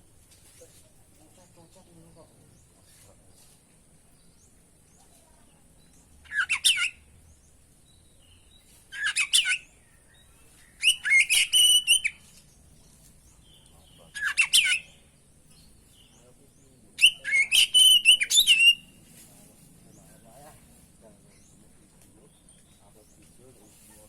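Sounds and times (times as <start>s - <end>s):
bird singing whistled phrases: 6.3s - 7.1s, 8.9s - 12.4s, 13.5s - 15.0s, 17.0s - 19.0s.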